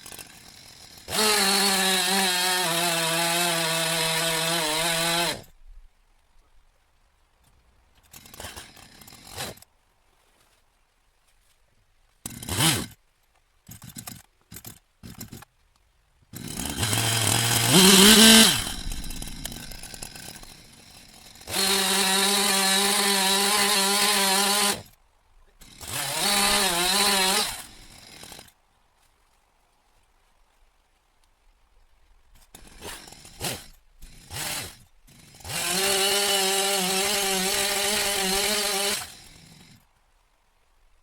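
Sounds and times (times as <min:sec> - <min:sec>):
chainsaw engine revving: 0:00.0 - 0:05.5, 0:12.3 - 0:12.9, 0:16.4 - 0:24.9, 0:25.6 - 0:28.5, 0:32.6 - 0:39.8.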